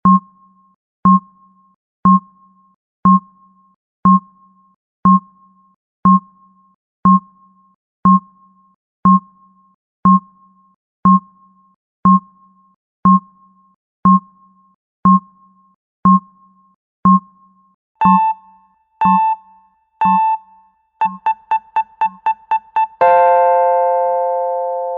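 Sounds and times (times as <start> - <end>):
electronic timer ticks: 18.0 - 20.4, 21.0 - 23.0
electronic beeps: 18.0 - 23.0
electronic alarm chime: 18.0 - 23.4.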